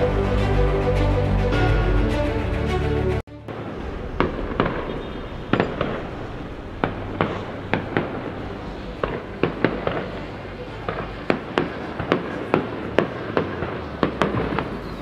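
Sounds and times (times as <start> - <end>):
rumble of fireworks bursts: 3.4 - 15.0
fireworks bangs: 3.5 - 15.0.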